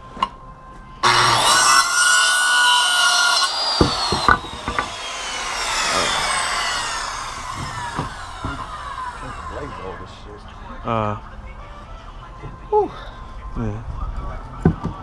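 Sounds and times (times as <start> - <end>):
saw blade spinning down whine: 1.0 - 10.3
circular saw cutting wood: 1.0 - 10.4
knocks: 3.7 - 5.0, 7.4 - 8.8.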